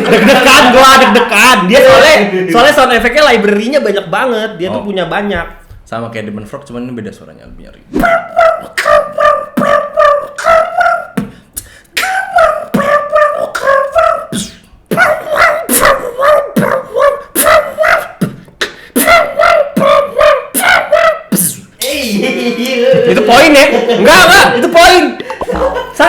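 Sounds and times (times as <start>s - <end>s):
person beatboxing: 7.8s - 21.9s, 25.2s - 26.0s.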